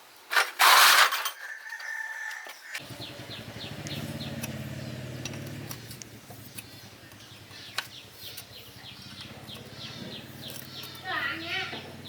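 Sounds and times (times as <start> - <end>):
small engine humming: 2.8 - 12.0.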